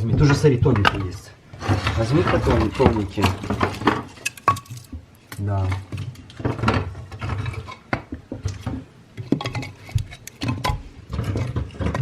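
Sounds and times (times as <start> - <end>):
wood knocking and scraping: 0.0 - 12.0.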